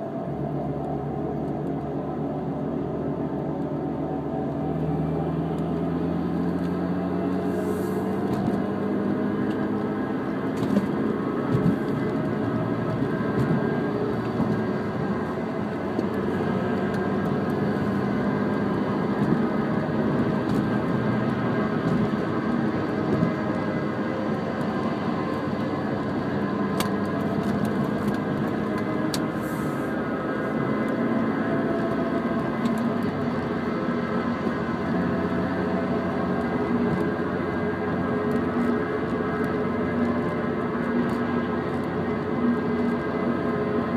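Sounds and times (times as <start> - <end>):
car engine droning: 0.0 - 43.9.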